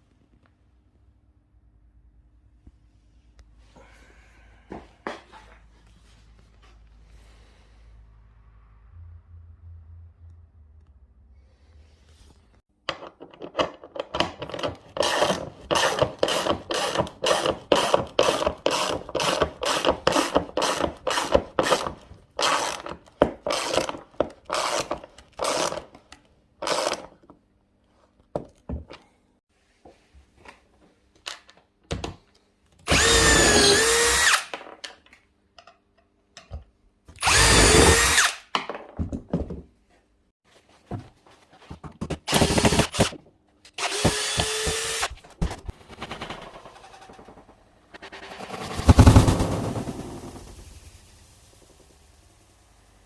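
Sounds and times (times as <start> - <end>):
power drill bursts: 32.9 - 34.5, 37.2 - 38.4, 42.3 - 43.2, 43.8 - 45.2.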